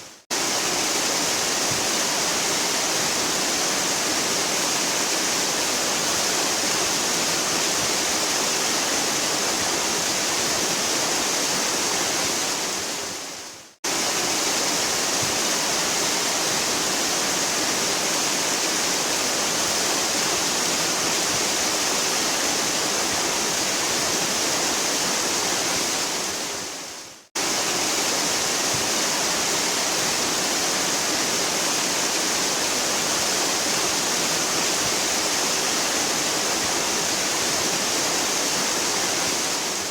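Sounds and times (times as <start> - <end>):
waterfall roaring: 27.4 - 39.9.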